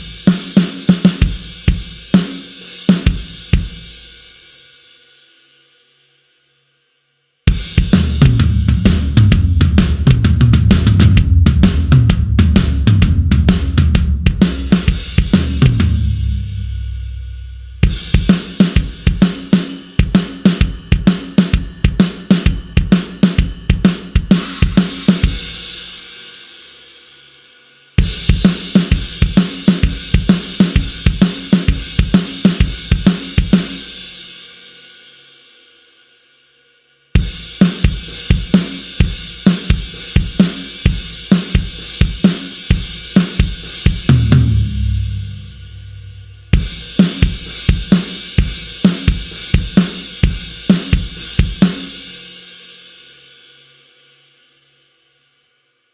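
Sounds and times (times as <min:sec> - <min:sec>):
acoustic drum kit grooves: 0:00.0 - 0:05.2, 0:07.5 - 0:35.0, 0:37.2 - 0:53.5.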